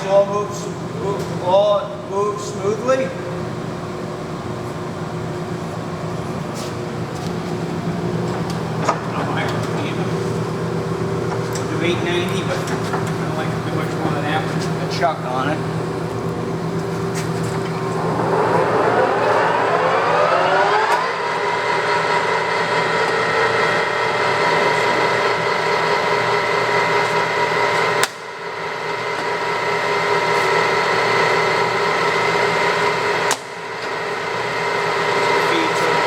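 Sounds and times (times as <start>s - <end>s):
lathe gear whine: 6.9s - 36.0s.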